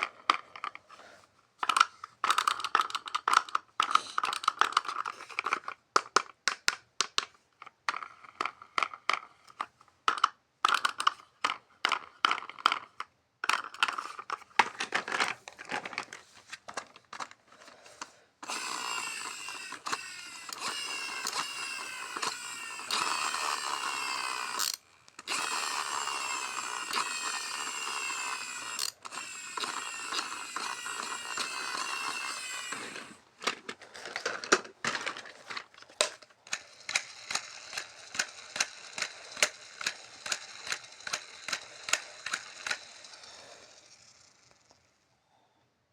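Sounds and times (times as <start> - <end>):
plastic toy parts clattering: 0.0 - 0.9, 1.6 - 43.3
small toy motor whirring: 18.4 - 45.1.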